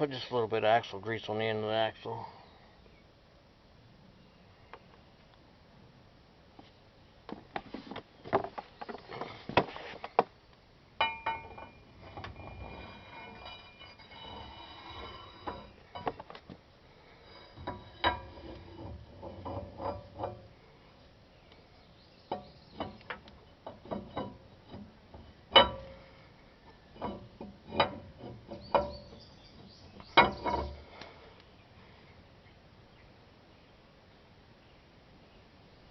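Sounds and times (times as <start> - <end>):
metallic ringing: 11.0 - 16.2, 22.3 - 26.2
metal tools clinking and knocking: 11.0 - 16.4, 22.3 - 26.1.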